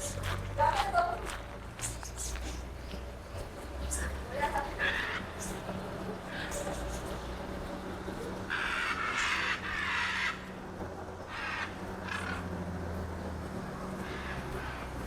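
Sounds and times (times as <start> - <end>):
steady low hum: 0.0 - 15.0
harsh raspy bird squawks: 8.5 - 10.6, 11.3 - 12.7.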